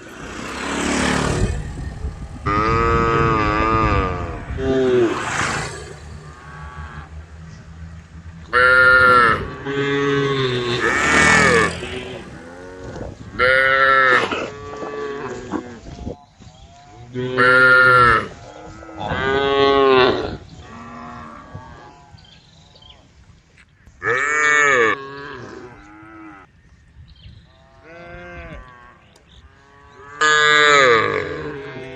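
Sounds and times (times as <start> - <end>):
cows mooing: 0.0 - 15.6, 29.6 - 31.9.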